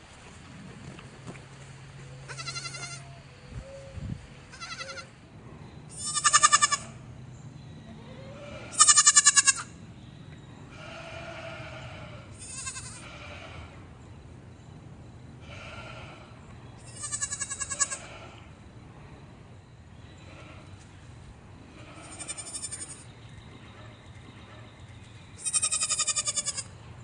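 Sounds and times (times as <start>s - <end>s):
goat bleating: 2.3s - 3.2s, 4.5s - 5.1s, 5.9s - 7.0s, 8.3s - 9.8s, 10.8s - 13.6s, 16.8s - 18.3s, 21.8s - 23.0s, 25.4s - 26.8s.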